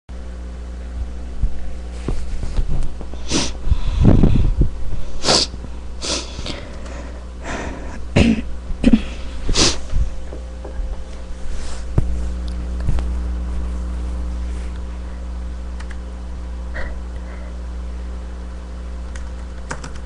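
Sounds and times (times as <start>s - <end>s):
steady low hum: 0.1s - 20.0s
person sneezing: 7.7s - 9.9s.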